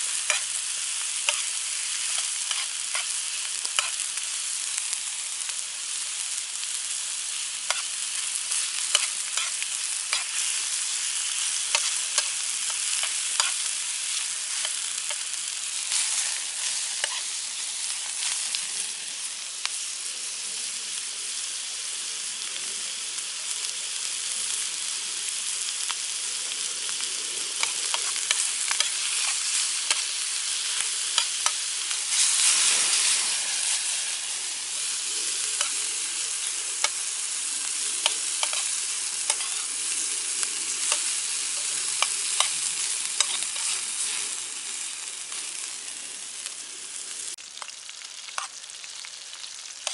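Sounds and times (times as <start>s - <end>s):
food sizzling in a frying pan: 0.0s - 49.9s
sharp crackles and clicks: 7.6s - 15.3s, 25.9s - 44.3s.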